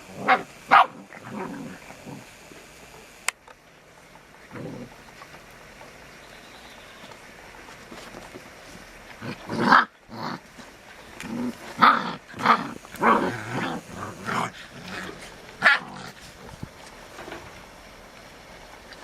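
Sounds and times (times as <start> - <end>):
puppies barking: 0.0 - 1.6, 11.1 - 16.5
puppies growling: 0.0 - 2.8, 4.2 - 5.5, 9.1 - 16.8.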